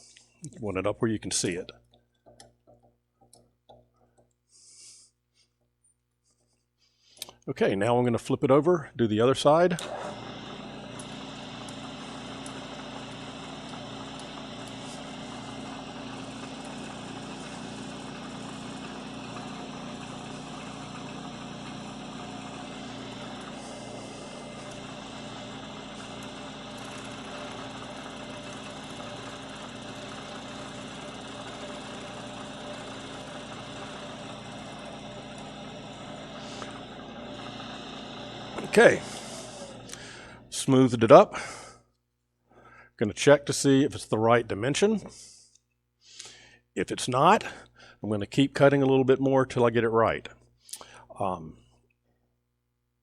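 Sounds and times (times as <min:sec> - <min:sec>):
milling machine cutting metal: 0:09.6 - 0:40.3.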